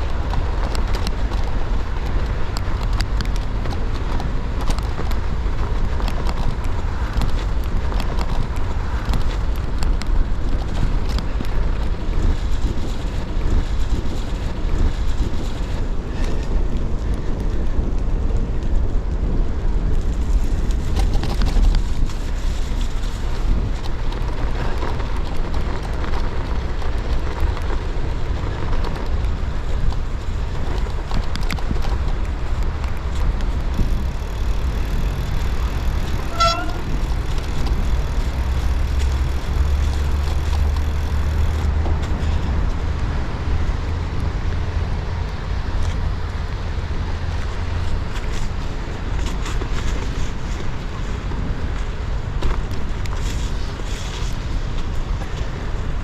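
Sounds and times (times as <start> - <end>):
bike tyres rolling over snow: 0.0 - 56.0
wind on camera microphone: 0.0 - 56.0
short high tone: 36.2 - 36.9.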